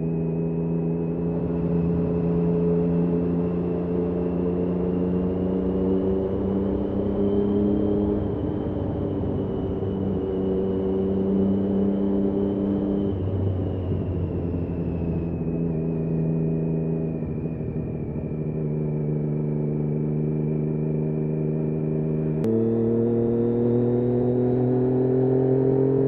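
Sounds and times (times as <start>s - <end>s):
motorcycle engine running: 14.6s - 26.0s.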